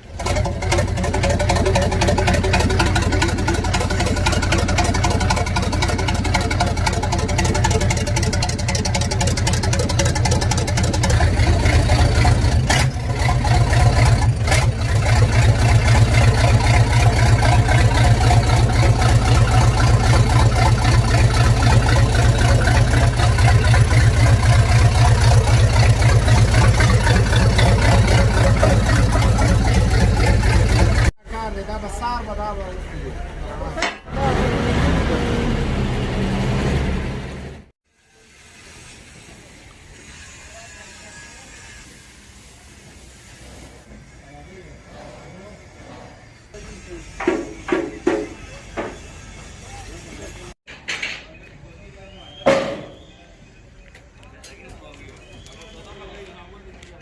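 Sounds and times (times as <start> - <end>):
diesel truck engine running: 0.0 - 37.7.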